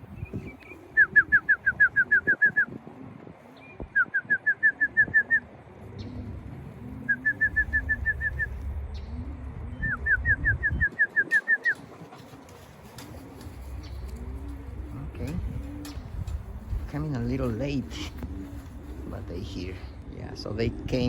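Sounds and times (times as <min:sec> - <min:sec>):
pigeons cooing: 0:00.0 - 0:21.0
high downslurred whistled notes: 0:07.1 - 0:11.9.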